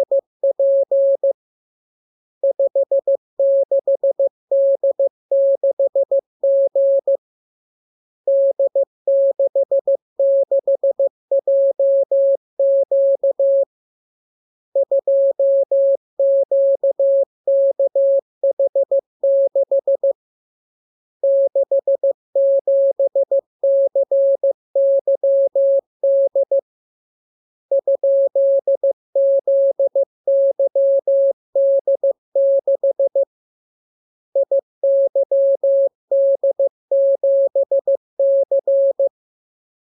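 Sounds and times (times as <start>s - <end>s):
morse code beeps: 0.0s - 1.4s, 8.3s - 13.7s, 27.7s - 33.3s, 34.4s - 39.1s.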